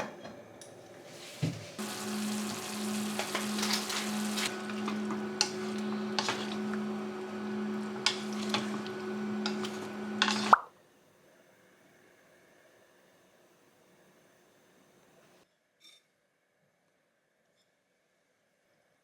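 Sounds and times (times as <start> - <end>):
appliance electric hum: 0.0 - 10.6
dishes clinking and scraping: 3.2 - 6.8, 8.0 - 10.5.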